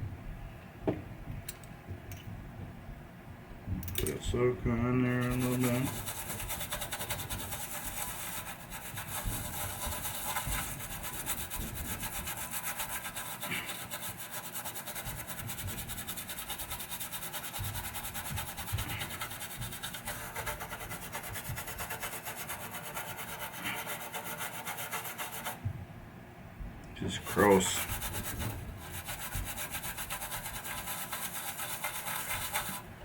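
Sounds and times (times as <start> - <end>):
toothbrush scrubbing circuit board: 5.1 - 25.6, 27.0 - 32.9.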